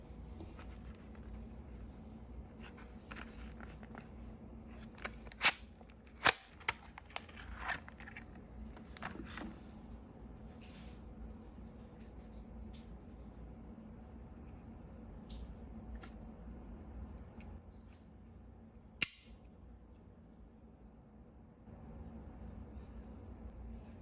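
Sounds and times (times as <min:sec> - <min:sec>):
handling scrapes and rustles: 0:00.0 - 0:09.8.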